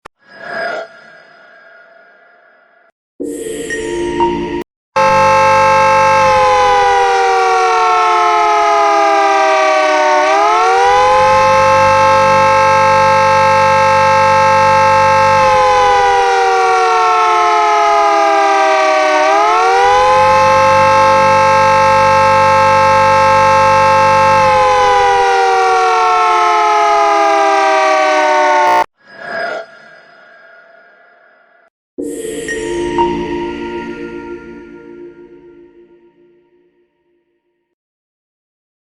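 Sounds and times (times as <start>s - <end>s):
warning siren wailing: 5.0s - 28.9s.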